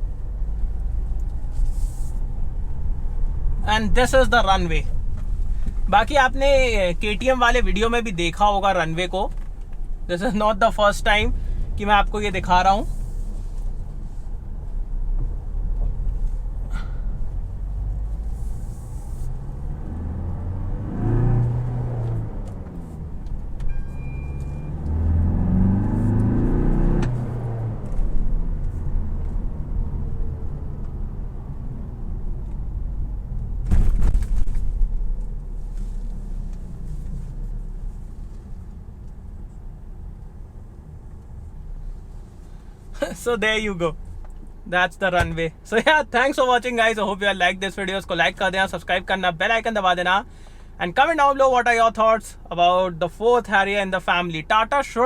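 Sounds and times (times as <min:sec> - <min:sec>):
diesel engine rumble: 0:00.0 - 0:55.0
road noise: 0:00.0 - 0:55.0
loud thump: 0:33.6 - 0:35.0, 0:45.2 - 0:45.4.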